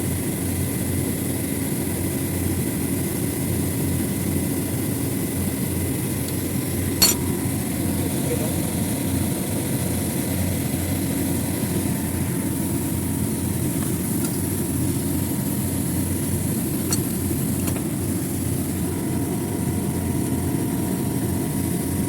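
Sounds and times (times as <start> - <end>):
machinery droning: 4.5 - 21.4.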